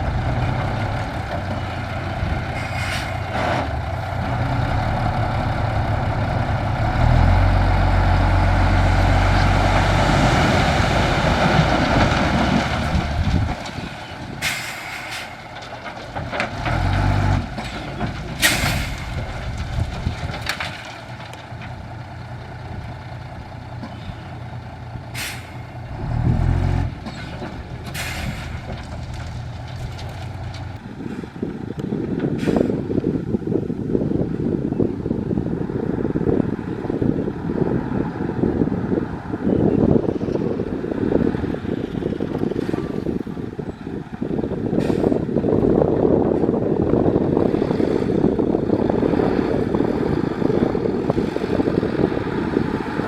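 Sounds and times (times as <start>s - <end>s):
diesel truck engine running: 0.0s - 53.0s
air brake hisses: 25.2s - 25.6s, 28.0s - 28.5s.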